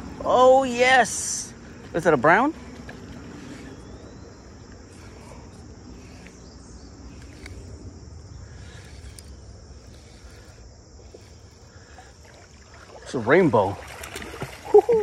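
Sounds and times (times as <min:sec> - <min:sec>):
insect chorus: 0:00.0 - 0:15.0
running water: 0:09.1 - 0:15.0.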